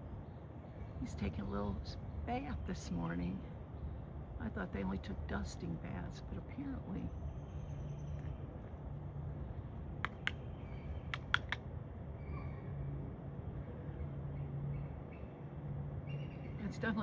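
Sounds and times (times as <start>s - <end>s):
sharp clicks: 10.0s - 10.4s, 11.1s - 11.6s.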